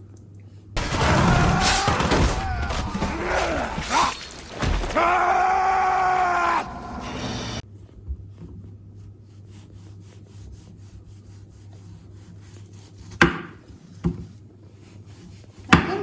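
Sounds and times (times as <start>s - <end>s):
comic voice groaning and wailing: 1.0s - 4.2s.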